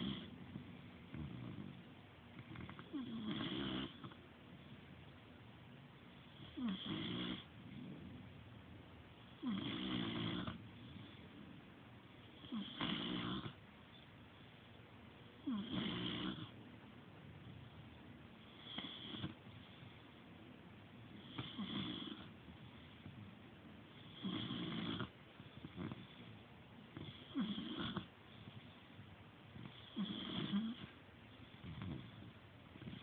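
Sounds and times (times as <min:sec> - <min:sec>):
pet snoring: 0:00.0 - 0:04.2, 0:06.2 - 0:08.2, 0:09.3 - 0:11.6, 0:12.3 - 0:13.6, 0:15.4 - 0:16.6, 0:18.4 - 0:20.0, 0:21.1 - 0:23.2, 0:23.9 - 0:26.3, 0:26.9 - 0:28.6, 0:29.5 - 0:33.0.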